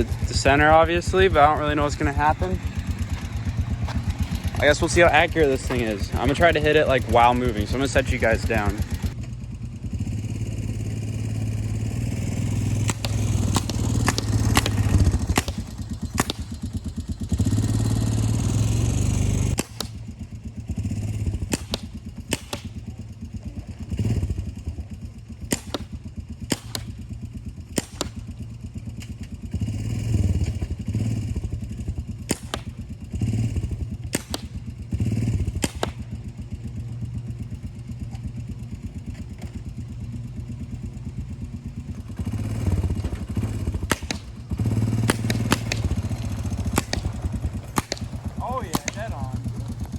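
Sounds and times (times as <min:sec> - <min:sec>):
four-wheeler engine running: 0:00.0 - 0:49.9
paintball gun pops: 0:12.8 - 0:16.7, 0:19.6 - 0:20.1, 0:21.4 - 0:22.8, 0:25.4 - 0:27.0, 0:27.7 - 0:29.3, 0:32.2 - 0:32.9, 0:34.1 - 0:34.7, 0:35.6 - 0:36.2, 0:43.8 - 0:44.4, 0:45.0 - 0:49.9.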